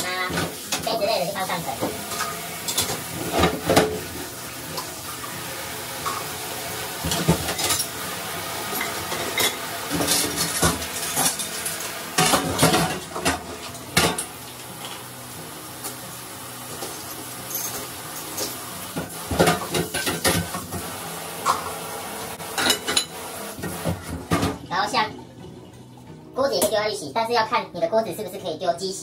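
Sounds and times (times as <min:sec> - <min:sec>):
dishes clattering in dishwasher rack: 0:01.8 - 0:04.2, 0:07.0 - 0:08.0, 0:08.7 - 0:14.3, 0:16.8 - 0:21.8, 0:22.5 - 0:24.7.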